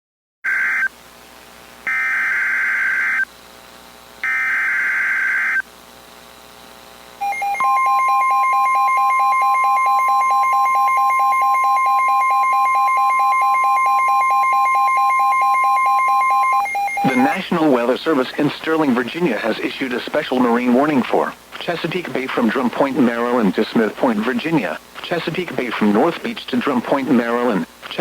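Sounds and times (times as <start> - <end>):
screeching digital data tones: 15.1 - 17.5
steady alert attention tone: 17.0 - 17.6.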